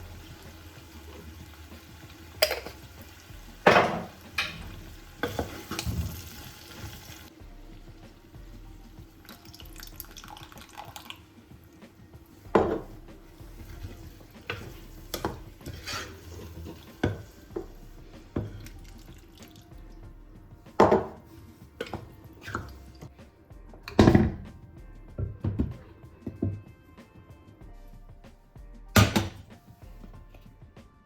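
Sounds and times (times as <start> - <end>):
tap water running into sink: 0.0 - 7.3, 9.2 - 11.6, 13.6 - 19.7
dishware clinking: 2.4 - 2.8, 3.6 - 6.0.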